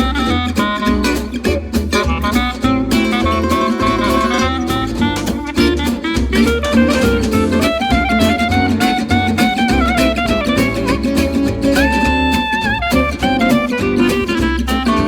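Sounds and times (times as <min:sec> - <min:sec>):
fiddle melody: 0:00.0 - 0:15.0
plucked guitar: 0:00.0 - 0:15.0.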